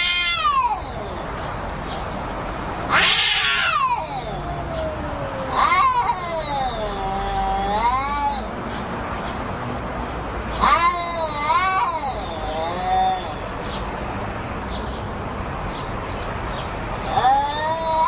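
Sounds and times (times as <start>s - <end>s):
cats yowling: 0.0s - 1.6s, 2.8s - 8.6s, 10.5s - 13.6s, 16.9s - 18.0s.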